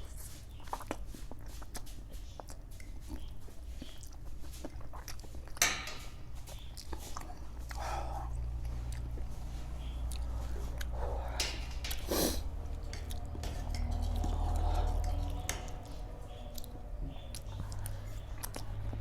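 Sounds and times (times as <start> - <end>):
close chewing noodles: 0.0 - 5.7, 6.3 - 19.0
low hum: 7.6 - 19.0.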